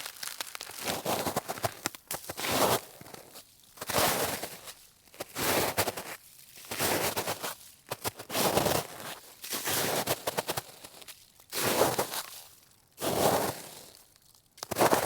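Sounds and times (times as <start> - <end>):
snow shovel scraping crunchy snow: 0.8 - 4.7, 5.4 - 6.0, 6.7 - 7.5, 8.1 - 10.4, 11.6 - 12.1, 13.0 - 13.8, 14.7 - 15.0.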